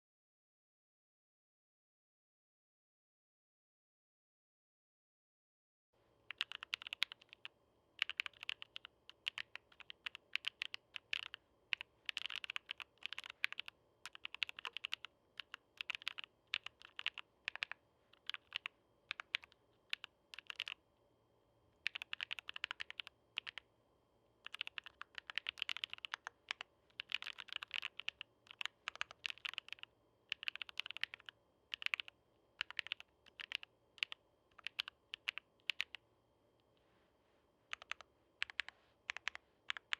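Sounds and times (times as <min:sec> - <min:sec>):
mechanical keyboard typing: 0:06.3 - 0:20.8, 0:21.8 - 0:23.6, 0:24.4 - 0:36.0, 0:37.7 - 0:39.9.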